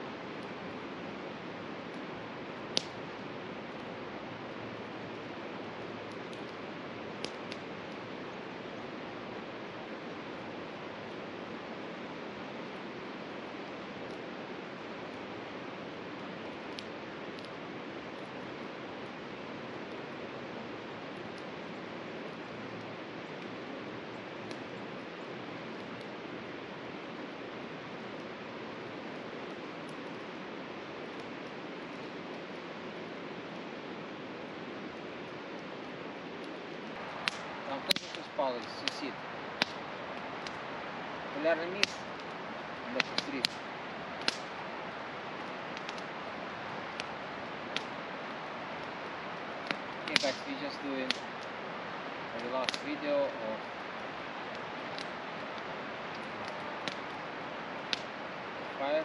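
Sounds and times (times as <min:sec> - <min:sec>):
campfire popping and crackling: 0:00.0 - 0:59.0
river rushing: 0:00.0 - 0:59.0
faint clicks: 0:44.2 - 0:44.5.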